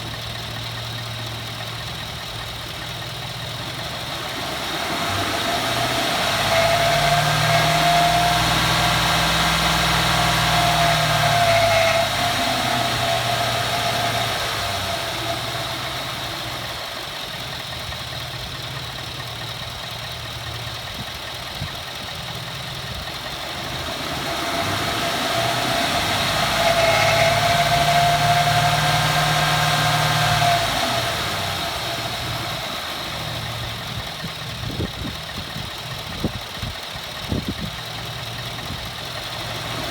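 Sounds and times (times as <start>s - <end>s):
pickup truck engine revving: 0.0s - 39.9s
thin high grinding tone: 5.6s - 14.3s, 25.0s - 30.3s.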